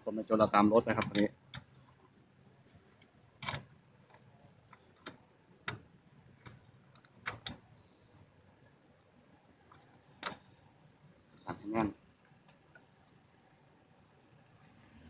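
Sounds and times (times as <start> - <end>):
tools clicking and knocking: 0.9 - 1.7.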